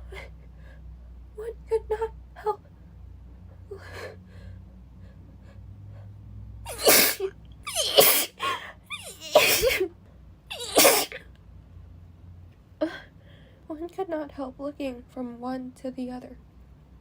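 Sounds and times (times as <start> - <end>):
woman sneezing: 6.7 - 9.9, 10.5 - 11.2.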